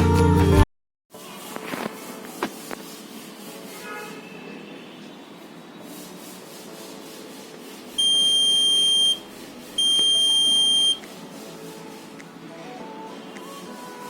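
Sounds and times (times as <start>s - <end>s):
high-pitched buzzer beeps: 8.0s - 9.2s, 9.8s - 11.0s.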